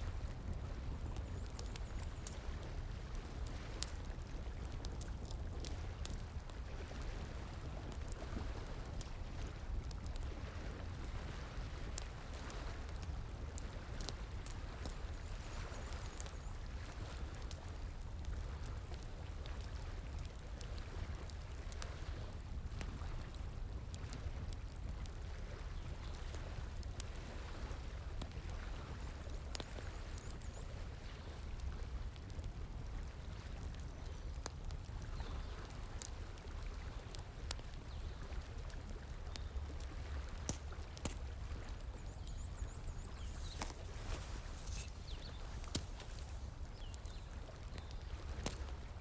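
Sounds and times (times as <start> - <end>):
wood fire crackling and popping: 0.2 - 6.7, 31.3 - 35.0, 35.7 - 49.0
flowing water: 38.2 - 49.0.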